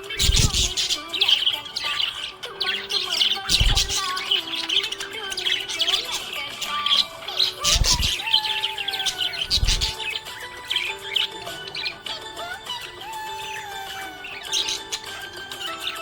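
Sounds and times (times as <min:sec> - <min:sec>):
background music: 0:00.0 - 0:16.0
budgerigar chirping: 0:00.0 - 0:16.0.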